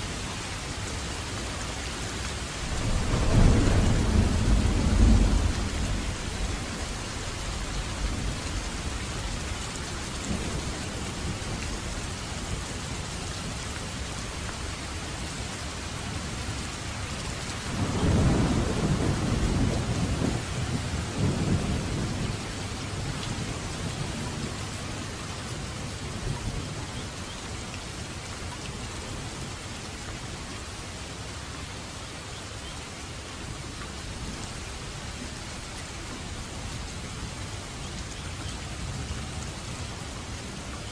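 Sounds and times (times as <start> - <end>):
heavy rain falling: 0.0 - 40.9
thunder rumbling: 2.5 - 9.6, 17.6 - 27.1.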